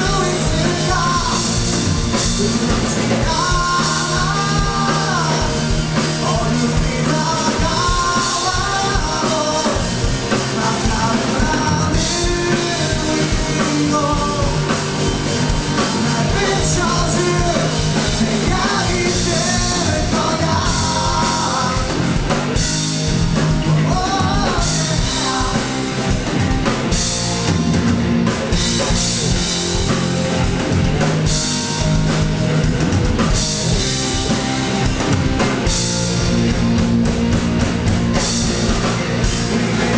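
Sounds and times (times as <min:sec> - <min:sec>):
person singing lead vocal: 0:00.0 - 0:26.6, 0:38.6 - 0:39.9
drum kit: 0:00.0 - 0:39.9
rock band playing live: 0:00.0 - 0:39.9.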